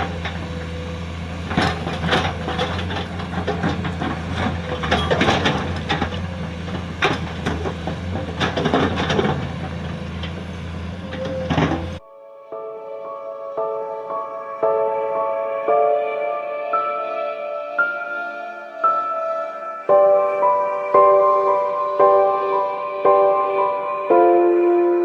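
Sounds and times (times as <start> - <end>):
diesel engine running: 0.0 - 12.0
excavator knocks and clanks: 0.0 - 12.0.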